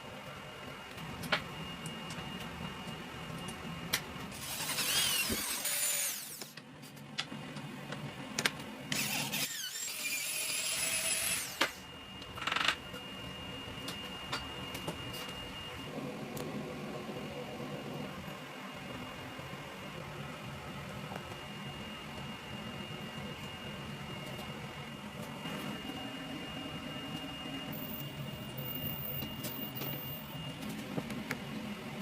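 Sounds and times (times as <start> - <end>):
steady high whine: 0.0 - 32.0
power tool working metal: 4.3 - 6.5, 8.9 - 11.8.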